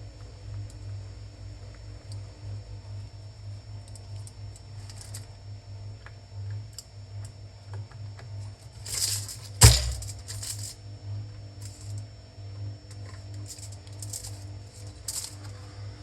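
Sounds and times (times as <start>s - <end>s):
steady low hum: 0.0s - 16.0s
tool set down with clack: 8.9s - 10.7s.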